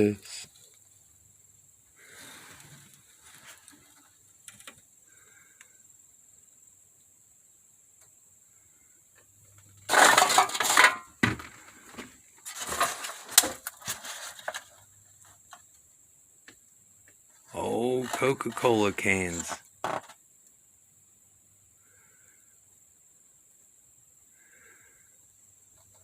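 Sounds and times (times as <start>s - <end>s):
objects clattering and clinking: 9.8s - 14.9s.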